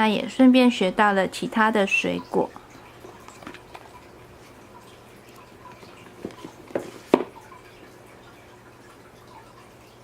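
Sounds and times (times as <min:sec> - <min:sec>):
light knocks handling books: 0:06.2 - 0:07.3.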